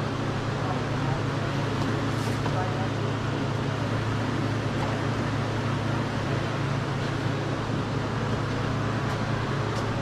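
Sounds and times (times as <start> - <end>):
droning hum with hiss: 0.0 - 10.0.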